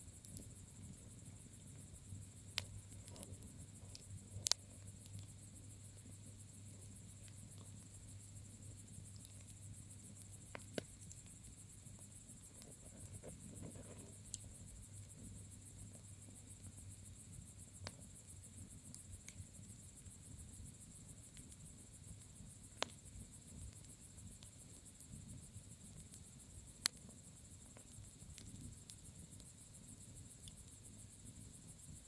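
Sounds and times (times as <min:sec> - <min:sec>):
insects chirping: 0:00.0 - 0:32.0
bonfire crackling and rumbling: 0:00.1 - 0:32.0.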